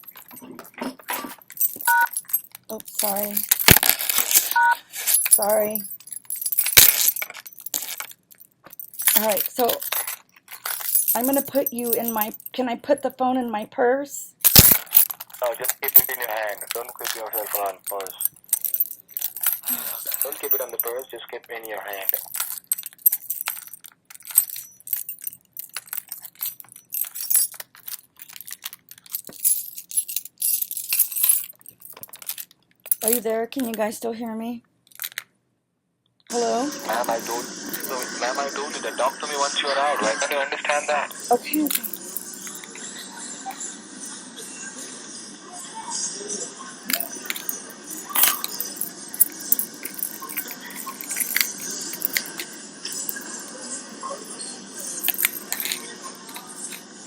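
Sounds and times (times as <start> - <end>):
rustling: 0.0 - 11.4
rustling handling noise: 0.0 - 12.5, 14.4 - 34.0, 34.8 - 35.3, 46.9 - 53.3, 54.8 - 57.0
keys and coins jangling: 0.0 - 13.1, 14.4 - 33.9, 34.9 - 35.3, 36.6 - 38.4, 41.2 - 43.6, 46.9 - 57.0.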